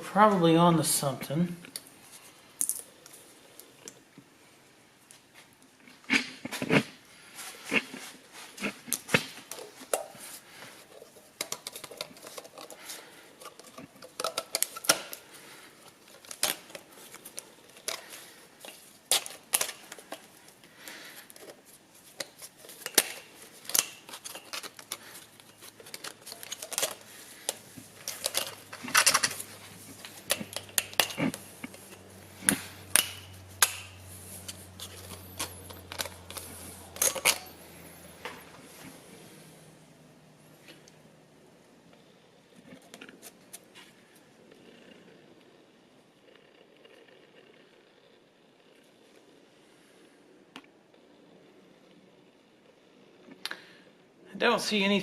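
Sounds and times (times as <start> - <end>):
metal tools clinking: 22.7 - 37.9.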